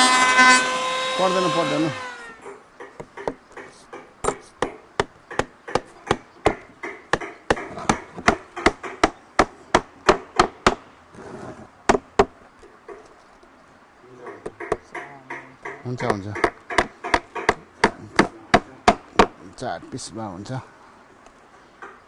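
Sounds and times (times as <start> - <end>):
hammer striking wood: 2.8 - 10.8, 11.9 - 13.0, 14.3 - 19.4.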